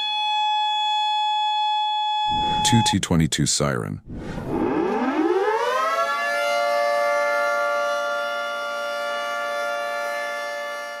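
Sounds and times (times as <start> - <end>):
warning siren wailing: 0.0 - 3.0, 4.1 - 11.0.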